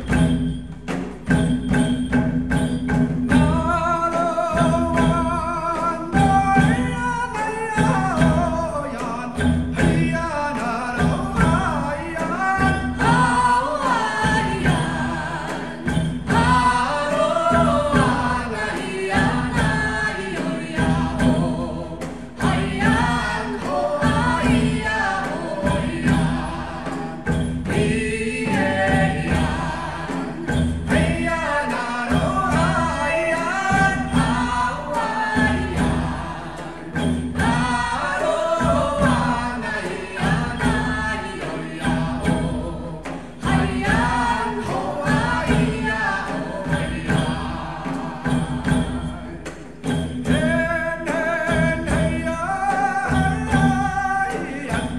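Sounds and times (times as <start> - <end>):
several voices singing together: 3.3 - 54.9.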